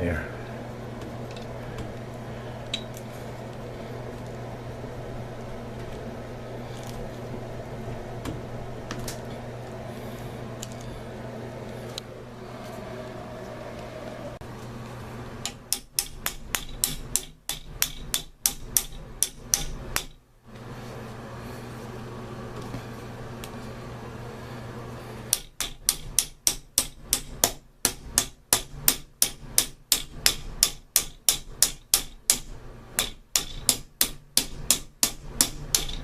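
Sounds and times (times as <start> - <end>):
steady low hum: 0.0 - 36.0
hammer tapping metal part: 15.4 - 20.2, 25.3 - 36.0.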